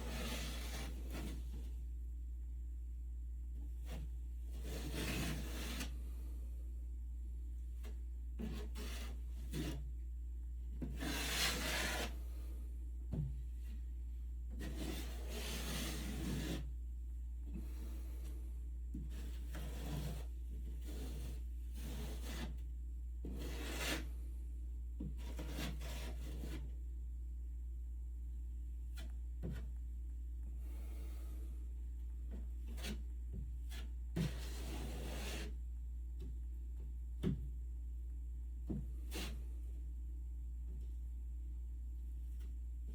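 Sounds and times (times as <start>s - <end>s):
drywall knife scraping compound: 0.0s - 1.9s, 3.6s - 6.4s, 7.7s - 10.0s, 10.7s - 13.9s, 14.5s - 16.8s, 17.5s - 26.8s, 28.8s - 29.8s, 30.6s - 36.4s, 38.6s - 39.9s
steady low hum: 0.0s - 5.0s, 5.9s - 11.0s.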